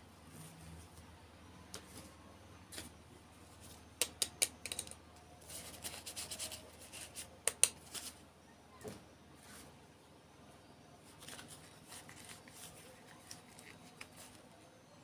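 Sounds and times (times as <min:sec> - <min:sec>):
plastic packaging clicks and snaps: 0:04.0 - 0:05.0, 0:07.4 - 0:07.8
crinkly plastic rustling: 0:11.1 - 0:14.6.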